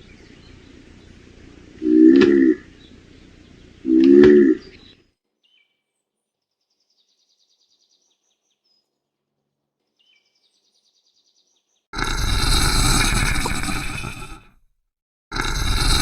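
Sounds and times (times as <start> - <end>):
loud harsh noise: 12.0 - 14.4, 15.3 - 16.0.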